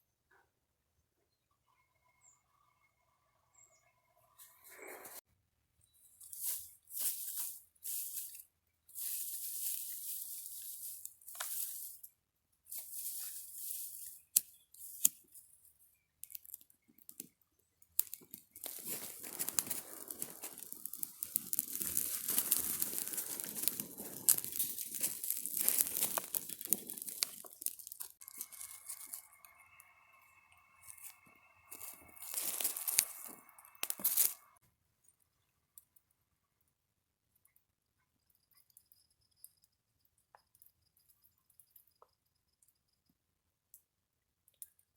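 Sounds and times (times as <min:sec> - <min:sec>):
faint steady tone: 0:00.0 - 0:05.2, 0:28.2 - 0:34.6
plastic packaging crinkling and tearing: 0:18.0 - 0:29.6, 0:30.9 - 0:34.6.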